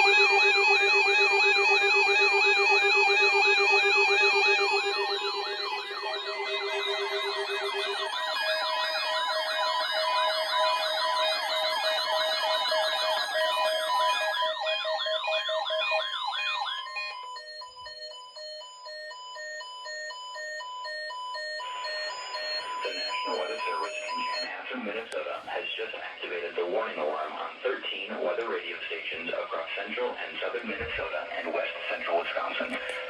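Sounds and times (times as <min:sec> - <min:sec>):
pulsing electronic beeps: 0:00.0 - 0:19.6, 0:20.4 - 0:24.6
warbling electronic siren: 0:00.0 - 0:24.6.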